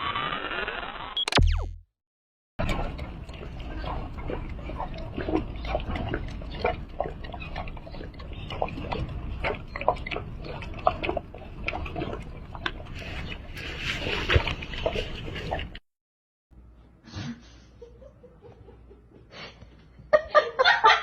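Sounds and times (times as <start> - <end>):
pet wet smacking and snuffling: 2.7 - 15.8.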